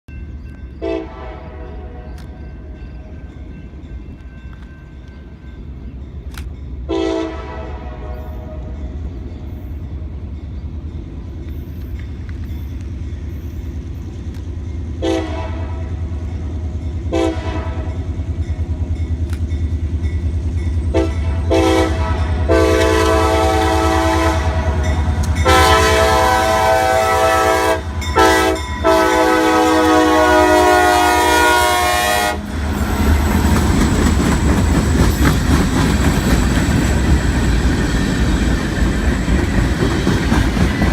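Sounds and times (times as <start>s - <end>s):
diesel locomotive engine rumbling: 0.1s - 40.9s
train wheels rolling on rails: 0.1s - 40.9s
multi-tone train air horn: 0.8s - 2.2s, 6.9s - 8.8s, 15.0s - 16.0s, 17.1s - 18.0s, 20.9s - 32.6s.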